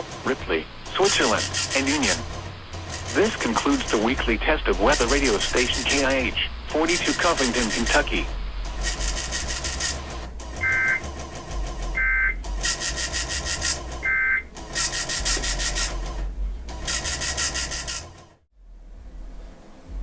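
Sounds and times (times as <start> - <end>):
radio static and hiss: 0.0 - 2.3, 3.1 - 8.7.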